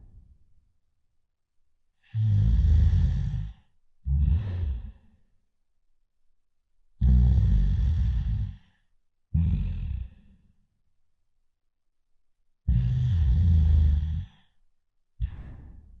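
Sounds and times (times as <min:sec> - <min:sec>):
person snoring loudly: 0:02.0 - 0:05.1, 0:07.0 - 0:08.7, 0:09.4 - 0:10.4, 0:12.7 - 0:14.4.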